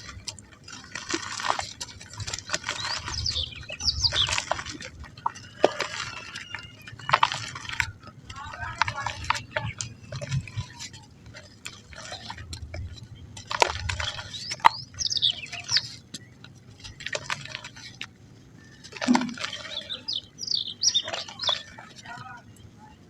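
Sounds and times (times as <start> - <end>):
mud crumbling by hand: 0.0 - 22.8
bird chirps: 2.2 - 10.8, 13.1 - 17.0, 18.6 - 23.0.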